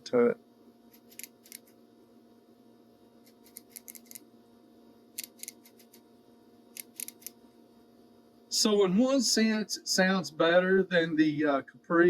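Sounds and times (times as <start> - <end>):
steady low hum: 0.0 - 12.0
ratchet clicking: 6.8 - 7.3.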